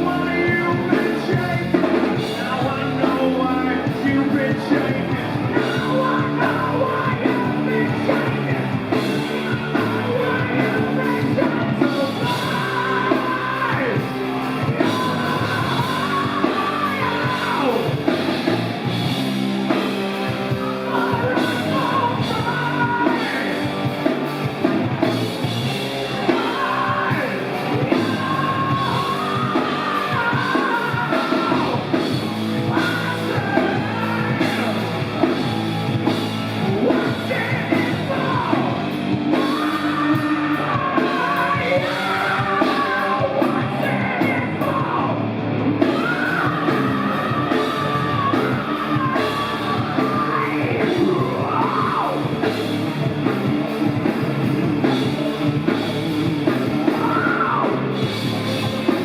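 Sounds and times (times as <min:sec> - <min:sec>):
distorted electric guitar: 0:00.0 - 0:59.0
rock band playing: 0:00.0 - 0:59.0.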